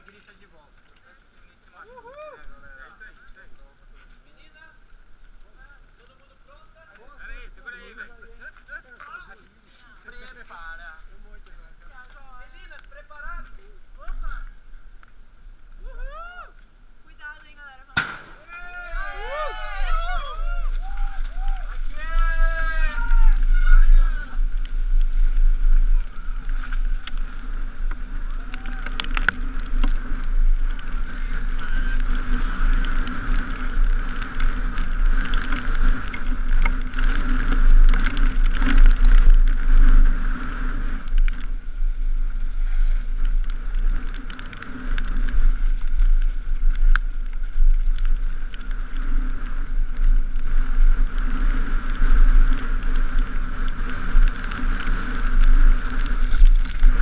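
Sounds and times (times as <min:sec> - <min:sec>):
wind rumble on microphone: 0:10.0 - 0:57.0
bike rattling and knocking: 0:21.0 - 0:40.4.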